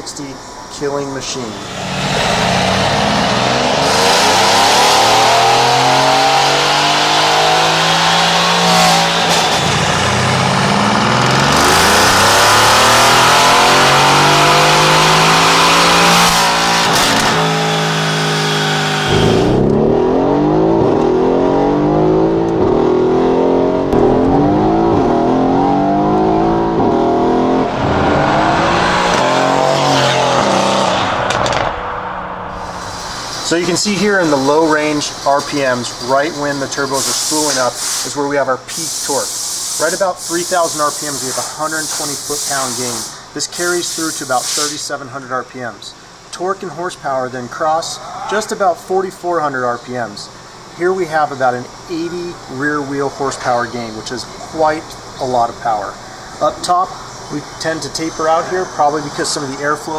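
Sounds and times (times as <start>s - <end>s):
car engine accelerating hard: 1.5s - 33.6s.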